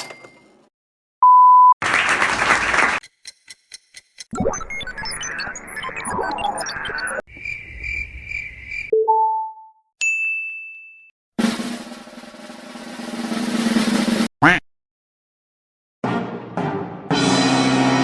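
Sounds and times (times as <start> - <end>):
drum roll: 11.4 - 14.3.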